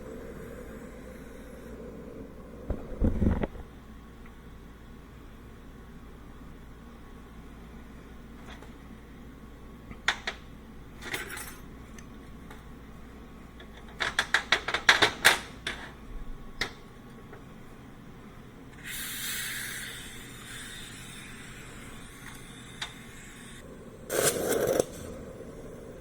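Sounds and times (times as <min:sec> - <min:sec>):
spray-like hiss: 0:18.8 - 0:26.0.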